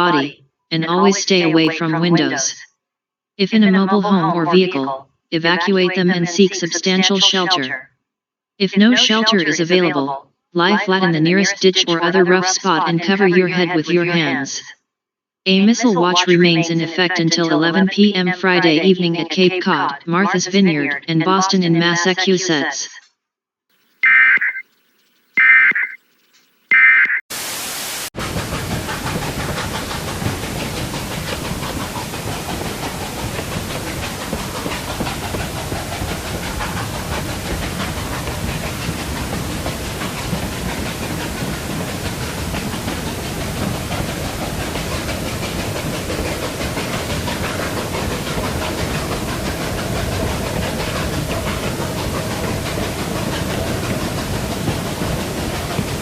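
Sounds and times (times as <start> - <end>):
train running: 0.0 - 2.4, 27.4 - 56.0
digital alert data tones: 24.0 - 24.6, 25.3 - 27.2.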